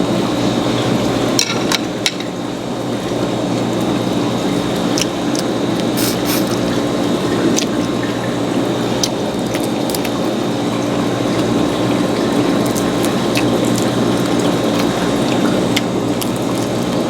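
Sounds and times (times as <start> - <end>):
chewing: 4.9 - 6.7, 12.6 - 17.0.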